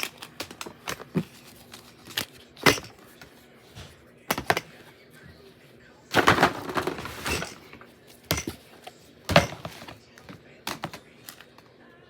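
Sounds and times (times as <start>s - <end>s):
plastic toys clattering into box: 0.0s - 3.0s, 4.3s - 4.8s, 6.1s - 11.5s.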